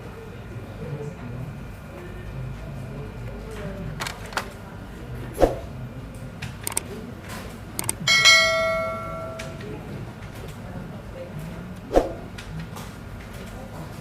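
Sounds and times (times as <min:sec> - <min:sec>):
bell-like metallic ring: 0:08.0 - 0:09.7.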